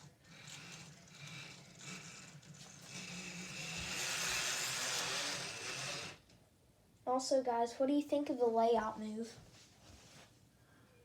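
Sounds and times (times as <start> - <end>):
model train motor hum: 0.0 - 6.2
wheels hissing on rails: 0.0 - 6.2.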